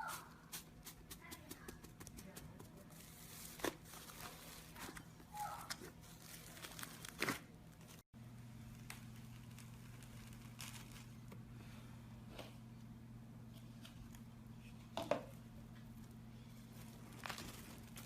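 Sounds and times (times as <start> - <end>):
crackling of material being squeezed: 3.0 - 11.5, 16.7 - 18.0
steady low hum: 7.4 - 18.0.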